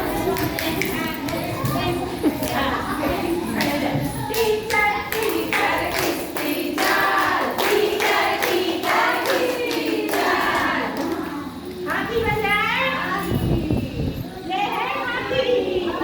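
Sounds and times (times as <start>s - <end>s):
children singing: 0.0s - 11.7s
hand clapping: 0.2s - 11.8s.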